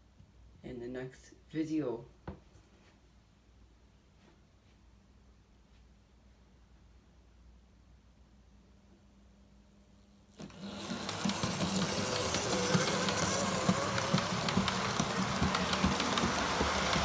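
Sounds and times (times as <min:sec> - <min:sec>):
model train motor whirring: 0:10.4 - 0:17.0
wheels clicking over track: 0:10.4 - 0:17.0.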